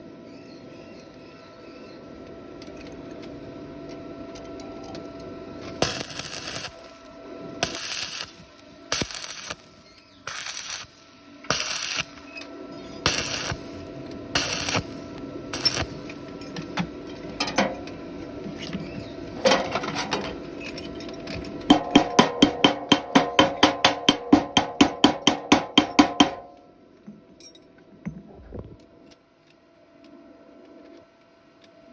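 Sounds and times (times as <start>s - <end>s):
welding arc crackling: 5.7s - 17.9s, 21.7s - 26.6s
metal-on-metal tapping: 21.7s - 26.6s.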